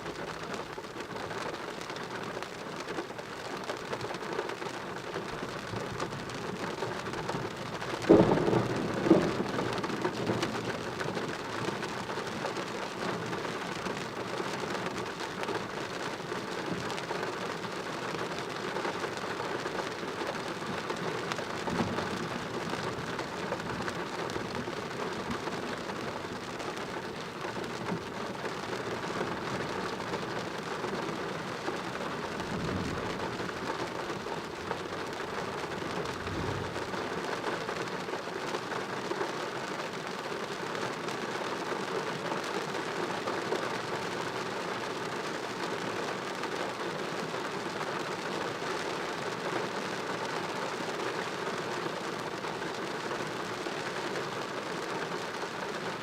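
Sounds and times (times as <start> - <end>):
heavy rain: 0.0 - 56.0
thunder: 8.0 - 10.8, 36.0 - 37.0.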